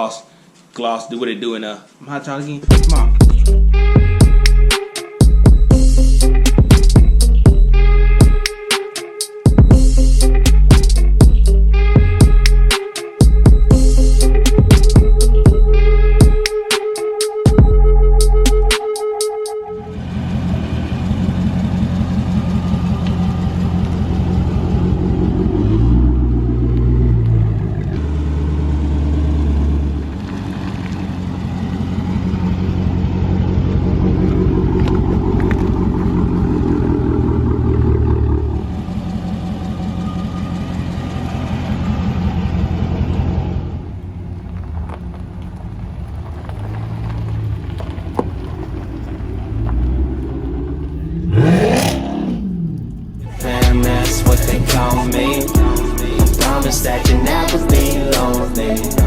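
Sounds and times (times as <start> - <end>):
car engine running: 2.7 - 8.4, 9.5 - 16.4, 19.8 - 59.0.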